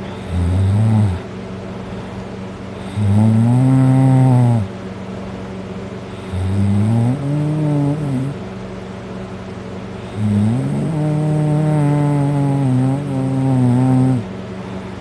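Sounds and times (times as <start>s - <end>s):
person snoring loudly: 0.2s - 1.2s, 2.8s - 4.7s, 6.2s - 8.4s, 10.1s - 14.3s.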